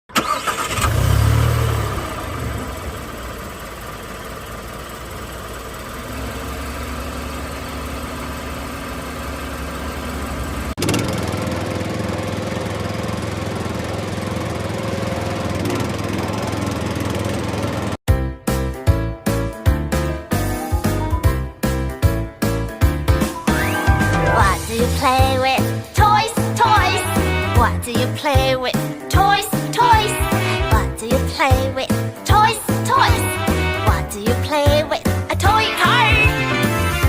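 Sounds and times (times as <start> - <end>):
toy tractor engine idling: 0.1 - 1.4, 2.0 - 18.0
music: 18.1 - 37.0.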